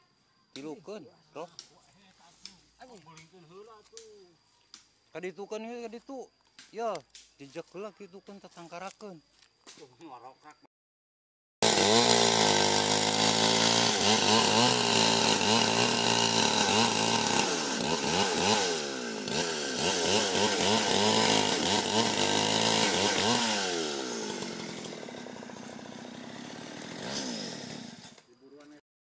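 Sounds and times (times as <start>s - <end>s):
chainsaw revving: 11.6s - 28.3s.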